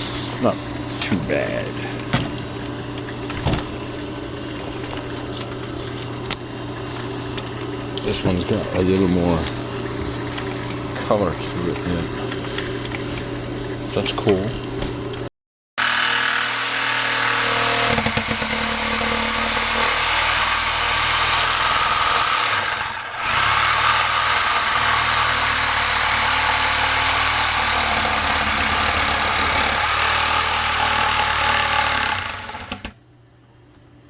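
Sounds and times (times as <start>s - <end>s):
power tool motor running: 15.8s - 32.9s.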